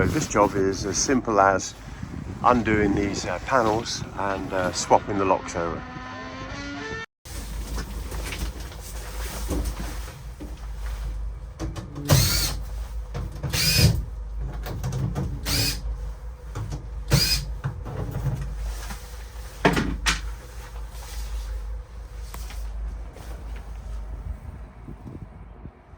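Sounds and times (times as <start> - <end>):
cordless drill motor whine: 12.1 - 12.6, 13.5 - 14.0, 15.4 - 15.9, 17.1 - 17.5.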